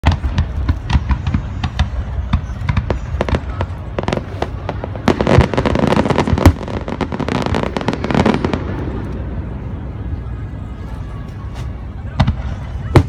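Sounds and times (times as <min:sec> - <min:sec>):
fireworks banging: 0:00.0 - 0:09.4.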